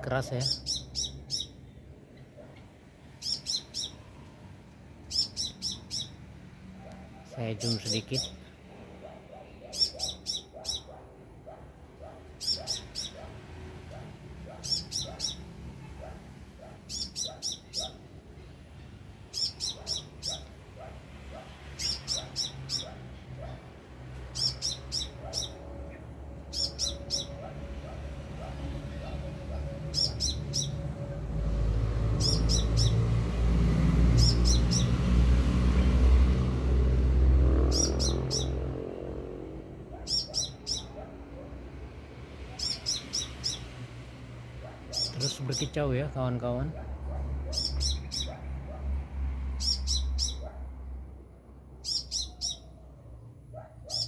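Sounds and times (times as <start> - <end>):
low engine rumble: 22.8 - 41.9.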